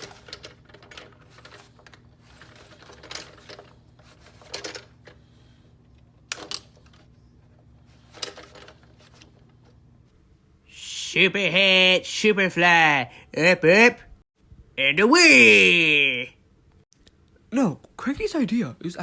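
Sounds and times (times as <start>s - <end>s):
hard objects clicking and knocking: 0.0s - 5.2s, 5.9s - 7.1s, 7.9s - 9.6s
low electrical hum: 0.0s - 19.0s.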